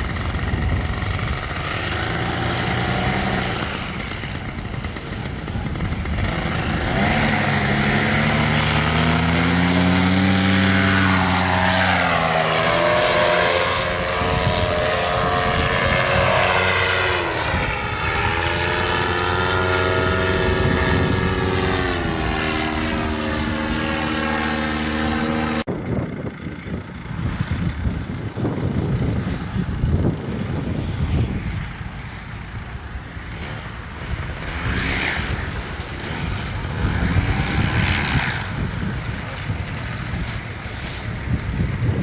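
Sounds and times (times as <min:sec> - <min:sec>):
paramotor engine and propeller: 0:00.0 - 0:42.0.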